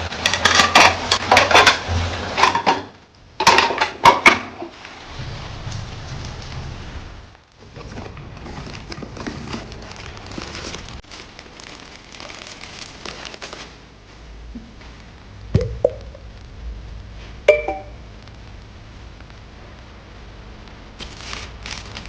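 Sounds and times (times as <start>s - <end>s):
kitchenware clinking: 0.2s - 4.6s, 17.5s - 18.0s
rustling and light clatter: 3.4s - 15.1s.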